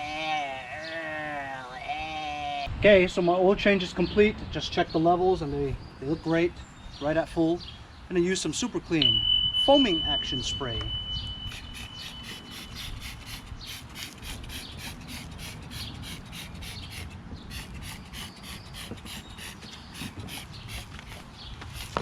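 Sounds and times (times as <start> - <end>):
spray bottle hissing squirts: 11.5 - 22.0.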